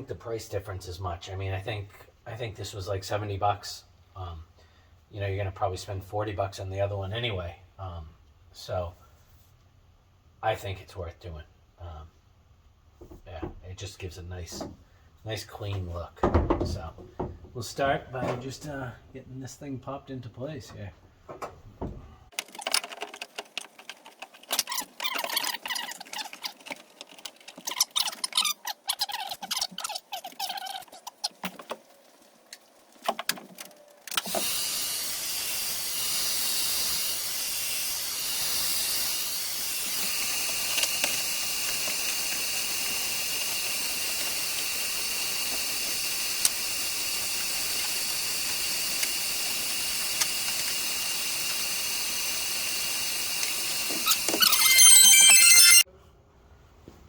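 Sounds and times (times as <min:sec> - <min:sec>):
rubber trim squeaking and rubbing: 0:21.4 - 0:31.8, 0:53.8 - 0:55.8
steady hiss: 0:34.2 - 0:55.6
faint high whine: 0:53.9 - 0:55.8.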